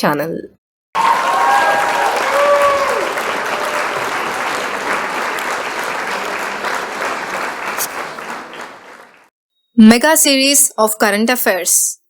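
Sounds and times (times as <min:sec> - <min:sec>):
crowd applause: 0:01.0 - 0:09.3.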